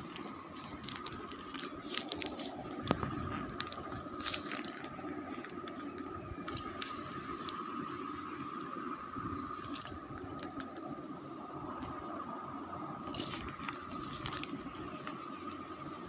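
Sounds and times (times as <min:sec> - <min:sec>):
packaging rustling and clicking: 0:00.0 - 0:07.6, 0:13.0 - 0:15.4
faint background hum: 0:00.0 - 0:16.0.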